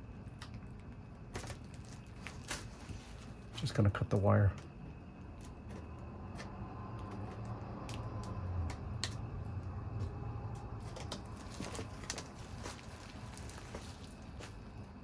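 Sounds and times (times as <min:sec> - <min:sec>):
low hum: 0:04.6 - 0:15.0.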